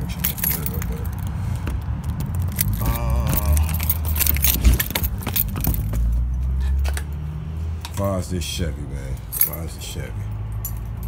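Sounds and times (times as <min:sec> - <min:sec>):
keys jangling: 0:00.0 - 0:01.4, 0:02.0 - 0:07.2, 0:09.2 - 0:11.0
vehicle engine and road rumble: 0:00.0 - 0:11.0.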